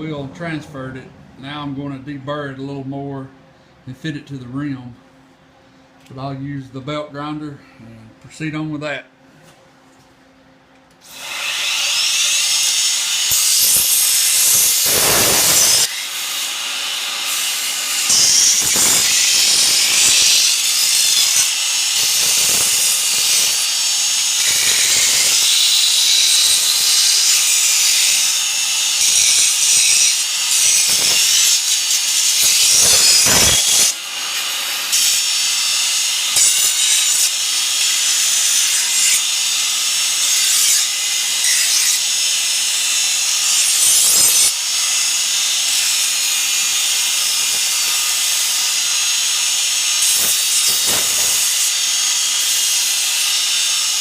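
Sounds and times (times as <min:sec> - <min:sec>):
belt grinder grinding steel: 0:11.1 - 0:54.0.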